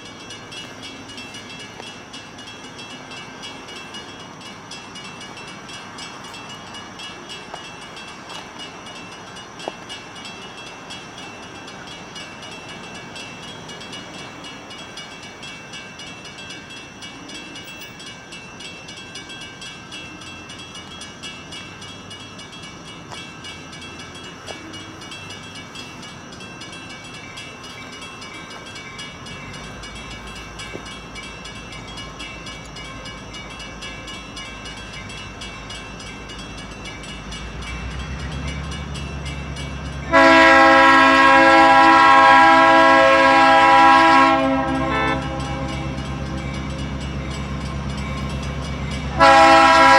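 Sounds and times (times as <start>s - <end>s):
diesel locomotive engine rumble: 0.0s - 49.9s
locomotive horn blast: 40.1s - 46.1s, 49.1s - 49.9s.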